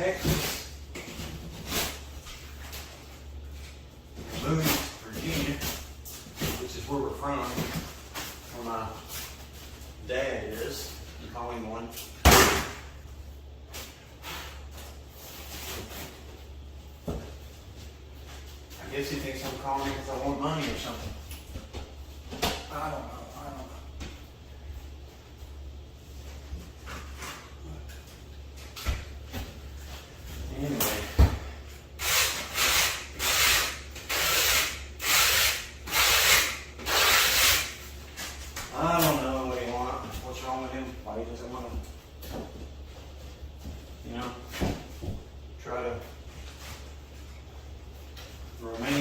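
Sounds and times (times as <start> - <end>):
steady low hum: 0.0 - 49.0
faint handling and scuffing: 37.9 - 49.0.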